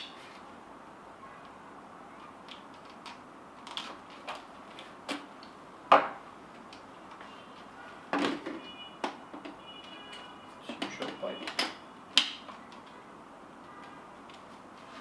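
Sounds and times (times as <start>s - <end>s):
plastic pipes clicking and knocking: 8.1s - 13.0s.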